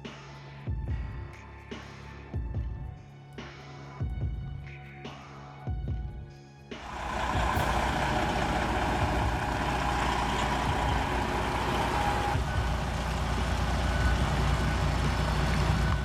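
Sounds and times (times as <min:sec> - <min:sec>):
heavy machinery engine rumble: 0:06.8 - 0:16.0
mechanical whine: 0:06.8 - 0:16.0.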